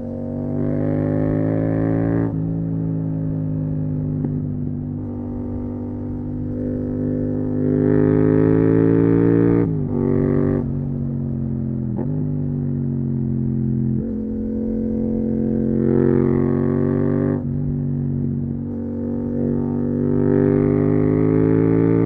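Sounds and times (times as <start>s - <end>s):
motorcycle engine while riding: 0.0s - 22.0s.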